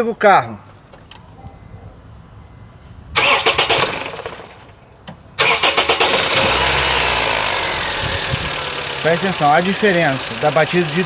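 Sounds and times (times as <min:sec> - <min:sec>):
car engine running: 0:03.2 - 0:11.0
car starter cranking: 0:03.2 - 0:11.0.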